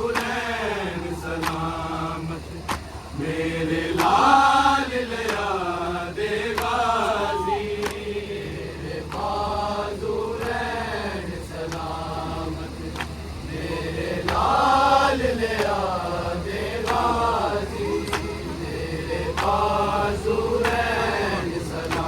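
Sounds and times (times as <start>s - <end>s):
men chanting together: 0.0s - 22.0s
steady low hum: 0.0s - 22.0s.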